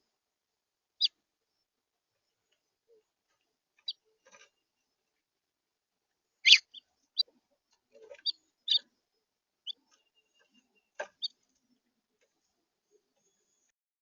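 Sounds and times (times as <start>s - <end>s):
finches chirping: 6.4s - 7.4s, 8.0s - 11.4s.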